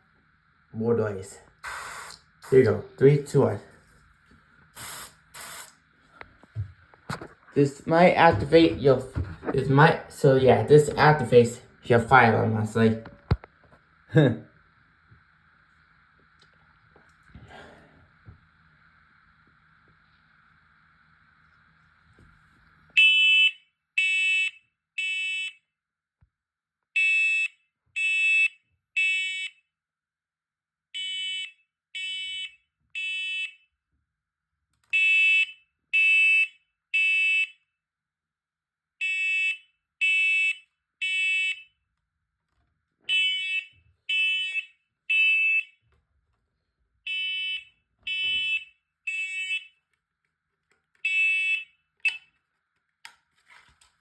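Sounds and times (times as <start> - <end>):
aerosol spray: 1.6 - 2.7, 4.7 - 5.8
smoke alarm high-pitched beeps: 1.6 - 3.6, 4.8 - 5.7, 23.0 - 25.6, 27.0 - 29.6, 34.9 - 37.6, 39.0 - 41.7, 43.1 - 45.8, 47.1 - 49.7, 51.0 - 52.3.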